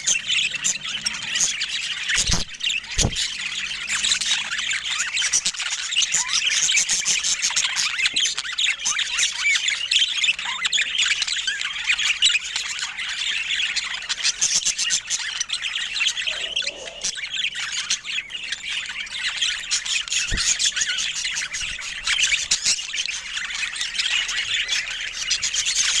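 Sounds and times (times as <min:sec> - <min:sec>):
budgerigars chattering: 0:00.0 - 0:04.9, 0:12.9 - 0:26.0.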